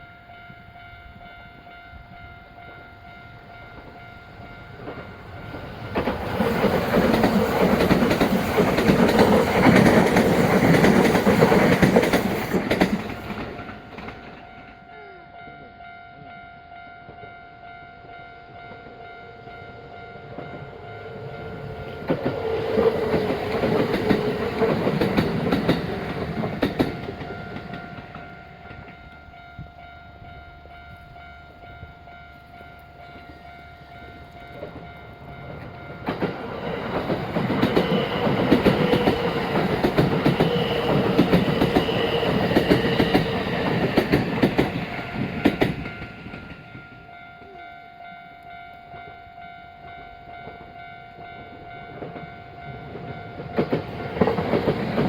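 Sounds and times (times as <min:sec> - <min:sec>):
crossing warning bell ringing: 0:00.0 - 0:55.0
electric trains passing: 0:00.0 - 0:55.0
wheels clattering over rail joints: 0:04.8 - 0:14.8, 0:21.6 - 0:28.9.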